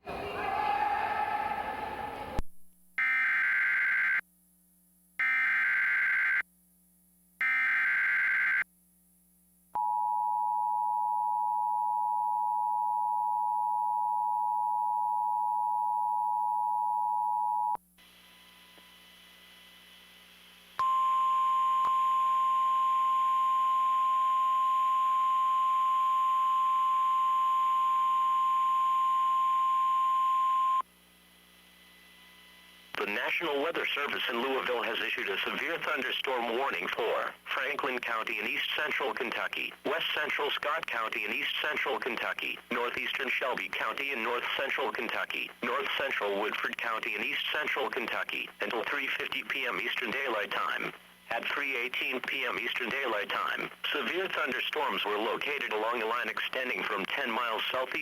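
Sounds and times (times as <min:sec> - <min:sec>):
radio static: 0:32.9 - 0:58.0.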